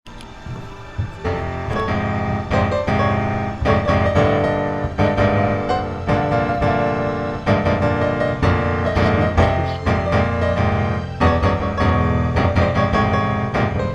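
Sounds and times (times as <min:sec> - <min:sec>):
piano music: 0:00.1 - 0:13.9.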